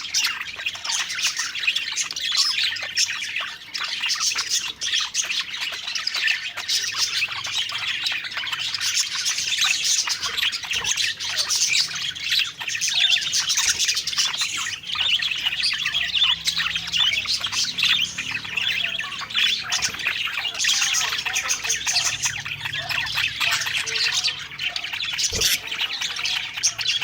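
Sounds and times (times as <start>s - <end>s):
budgerigars chattering and warbling: 0.0s - 27.0s.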